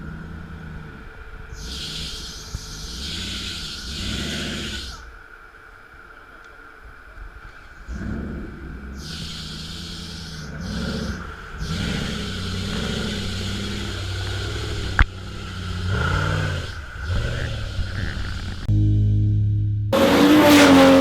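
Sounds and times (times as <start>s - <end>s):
off-road engine revving: 0.0s - 5.1s, 7.8s - 18.7s, 19.9s - 21.0s.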